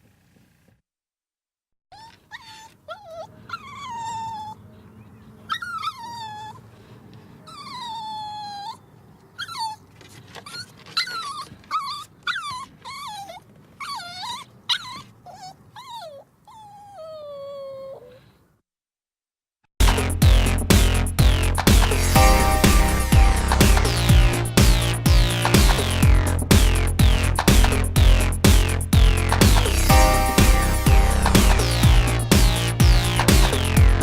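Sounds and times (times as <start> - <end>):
dog whining and yelping: 1.9 - 4.6, 5.5 - 6.7, 7.4 - 18.3.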